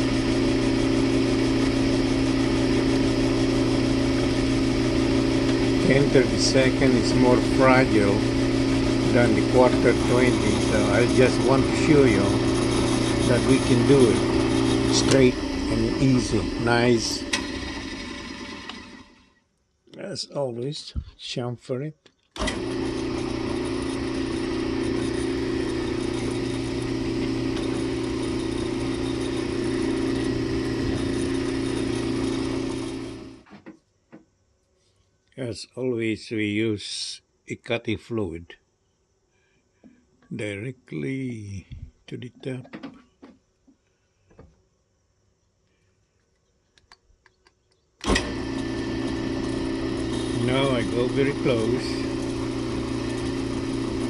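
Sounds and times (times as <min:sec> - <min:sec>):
drill press motor running: 0:00.0 - 0:19.4, 0:22.4 - 0:33.4, 0:48.0 - 0:54.0.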